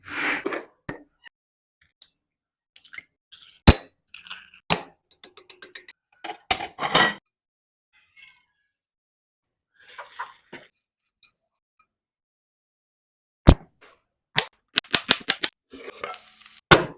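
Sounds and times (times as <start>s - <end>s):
utensils clinking against bowls: 3.4s - 7.2s.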